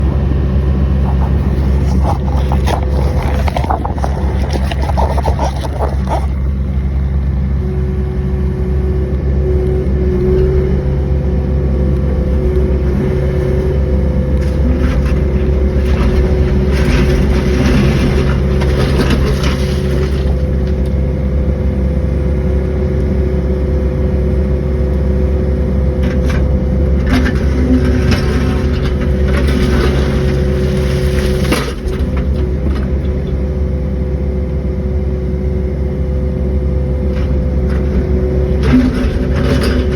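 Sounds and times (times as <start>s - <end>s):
excavator engine running: 0.0s - 39.9s
bucket scraping and rattling: 0.8s - 6.8s, 14.4s - 20.6s, 27.1s - 33.1s.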